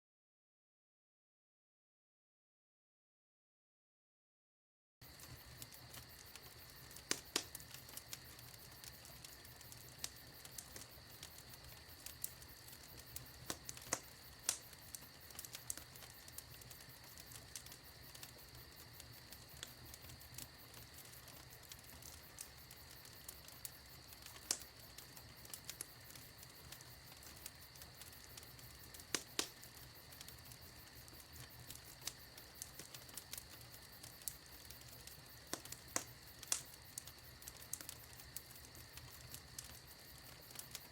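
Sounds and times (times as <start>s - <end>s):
faint steady hiss: 5.0s - 40.9s
wood fire crackling: 5.0s - 40.9s.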